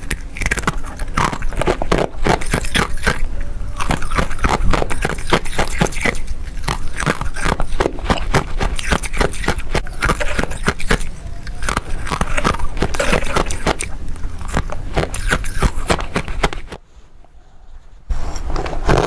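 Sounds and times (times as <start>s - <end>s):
frost being crunched by teeth: 0.0s - 16.8s.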